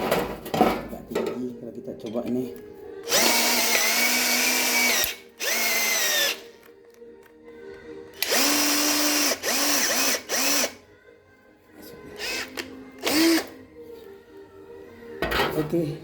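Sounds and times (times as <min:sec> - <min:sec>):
electric drill whining: 0:03.0 - 0:06.5, 0:08.2 - 0:10.8, 0:12.2 - 0:13.6.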